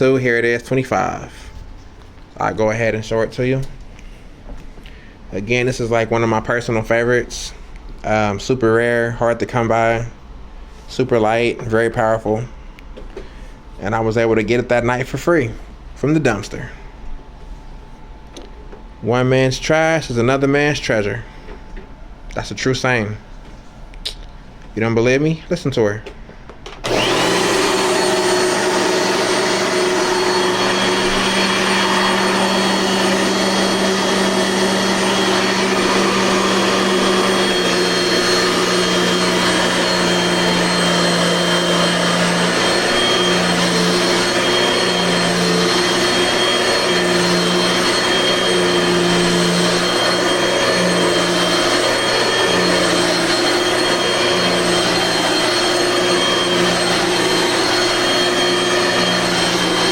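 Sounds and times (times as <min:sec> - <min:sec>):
vacuum cleaner running: 0:26.8 - 0:59.9.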